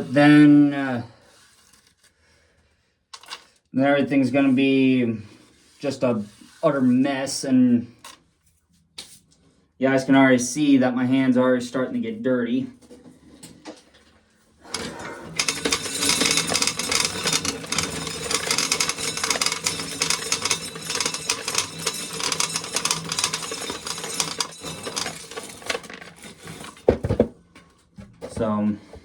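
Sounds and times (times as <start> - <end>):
corn sheller rattling clatter: 14.7 - 27.3.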